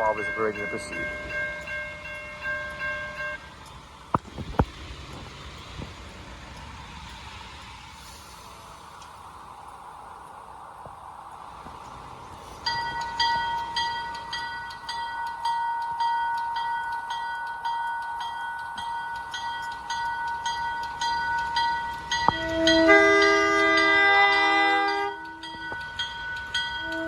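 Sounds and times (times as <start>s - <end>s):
railroad crossing bell ringing: 0.0s - 4.2s, 11.3s - 27.0s
locomotive horn: 22.2s - 27.0s.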